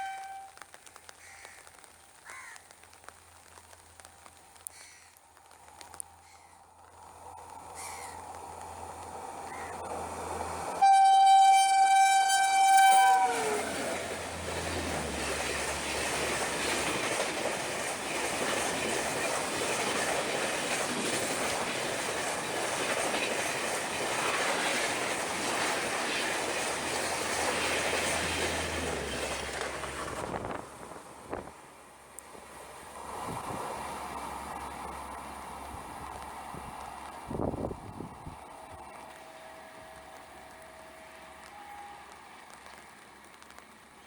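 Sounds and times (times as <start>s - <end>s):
train horn: 0.0s - 0.6s, 10.8s - 14.2s, 39.0s - 42.8s
train wheels clattering on rail: 10.8s - 31.5s.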